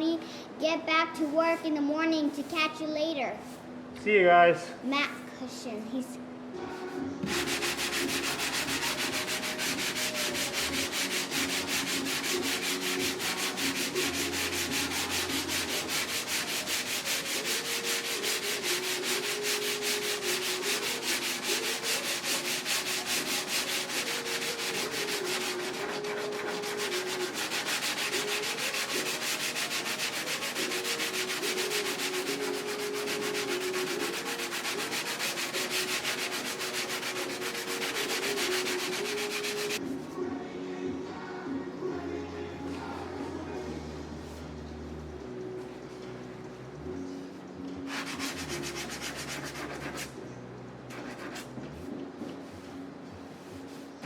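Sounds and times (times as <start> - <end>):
orbital sander on metal panel: 7.3 - 39.8.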